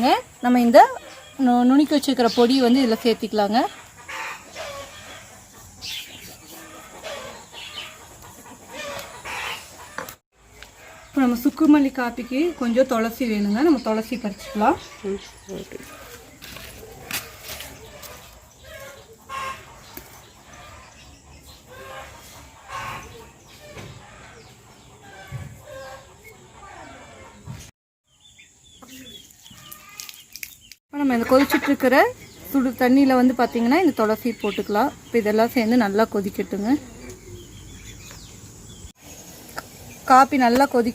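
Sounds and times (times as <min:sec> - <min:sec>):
chicken clucking: 0:03.8 - 0:10.2, 0:14.4 - 0:27.6.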